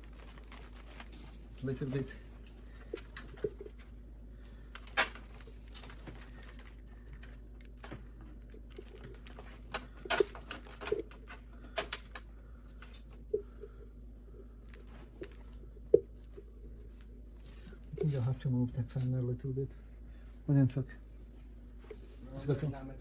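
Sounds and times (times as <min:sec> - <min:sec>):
faint steady hum: 0:00.0 - 0:23.0
computer parts clicking: 0:08.6 - 0:13.0.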